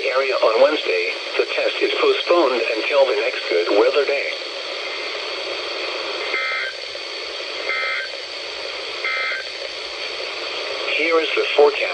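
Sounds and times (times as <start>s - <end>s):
radio hiss: 0.0s - 11.9s
warbling two-tone data bursts: 7.6s - 8.1s, 9.0s - 9.5s.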